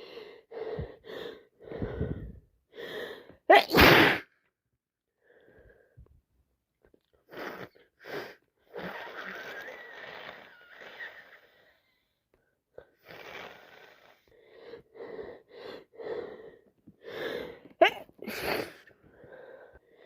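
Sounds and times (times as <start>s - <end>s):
person sneezing: 3.5s - 4.3s, 17.8s - 18.9s.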